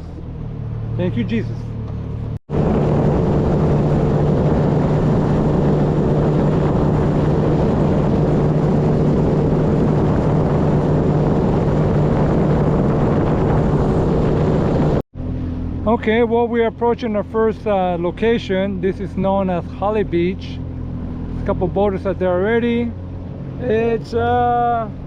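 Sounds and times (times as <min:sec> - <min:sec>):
motorboat engine running: 0:00.0 - 0:25.0
water rushing: 0:02.5 - 0:15.0.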